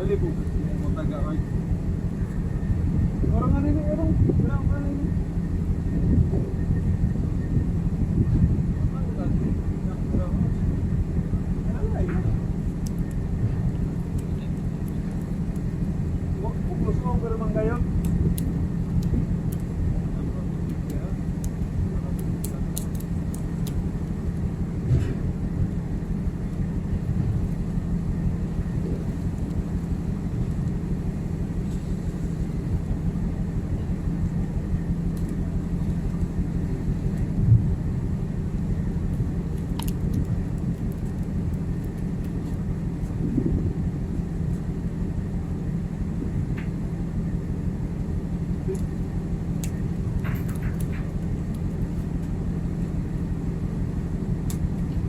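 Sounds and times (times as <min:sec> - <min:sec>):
ship machinery drone: 0:00.0 - 0:55.0
clicks and light knocks: 0:49.6 - 0:52.4.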